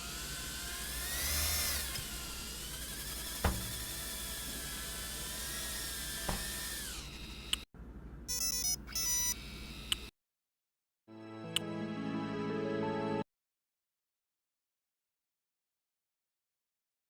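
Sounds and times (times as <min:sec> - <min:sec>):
drone motors whining: 0:00.0 - 0:07.7
short electronic beeps: 0:08.3 - 0:09.4.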